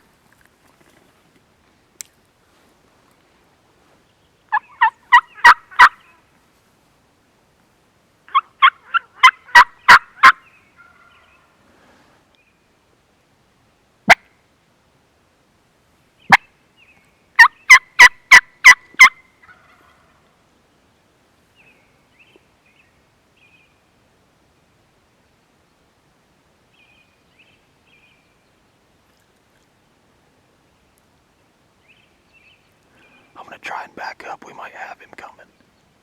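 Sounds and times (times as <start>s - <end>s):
turkey yelps: 4.5s - 6.2s, 8.3s - 11.2s, 17.4s - 20.2s.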